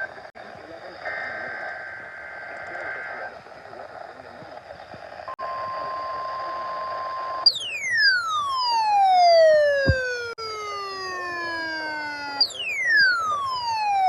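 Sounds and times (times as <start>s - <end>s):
steady electronic tone: 0.0s - 4.2s
electronic siren gliding down: 5.4s - 14.0s
short thump: 9.8s - 10.2s.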